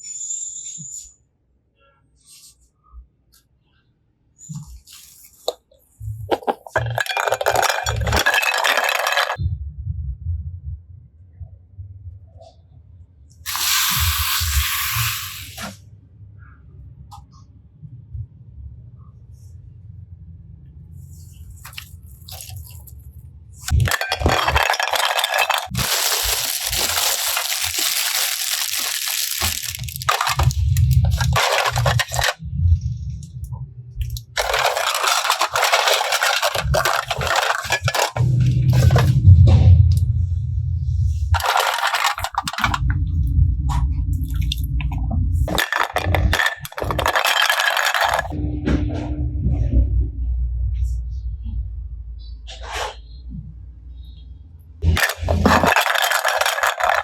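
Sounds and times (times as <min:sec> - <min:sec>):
slime squishing and crackling: 0:25.7 - 0:31.1.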